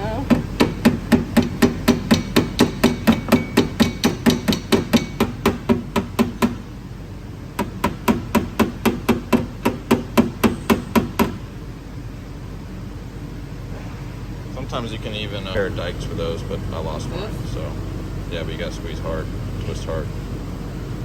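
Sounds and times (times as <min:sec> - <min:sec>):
hammer tapping sheet metal: 0:00.3 - 0:06.6, 0:07.6 - 0:11.4.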